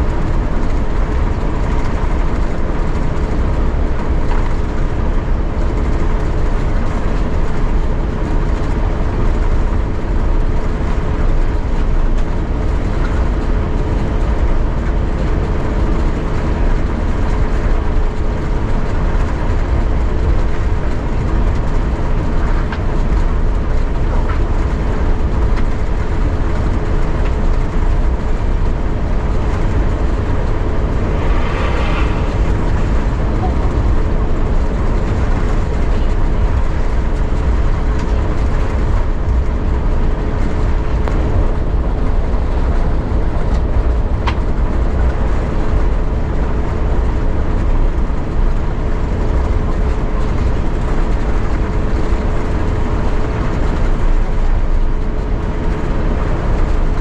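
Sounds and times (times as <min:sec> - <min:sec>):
aircraft cabin rumble: 0:00.0 - 0:57.0.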